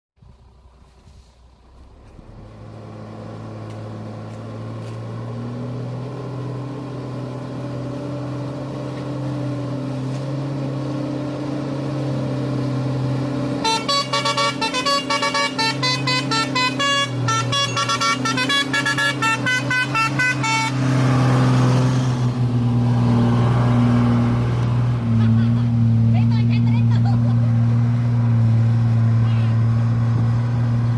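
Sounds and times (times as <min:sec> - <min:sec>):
heavy vehicle engine droning: 0:00.2 - 0:30.9
brief air hiss: 0:01.0 - 0:01.5
musical multi-tone horn: 0:13.6 - 0:20.9.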